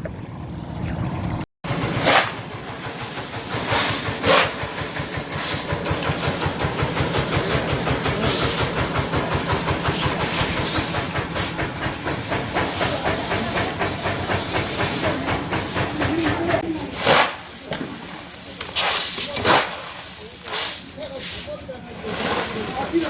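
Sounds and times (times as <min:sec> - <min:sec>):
diesel engine chugging: 0:00.0 - 0:23.0.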